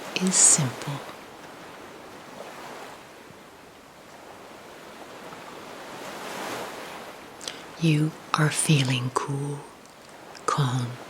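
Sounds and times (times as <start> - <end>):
ocean waves washing in: 0.0 - 11.0.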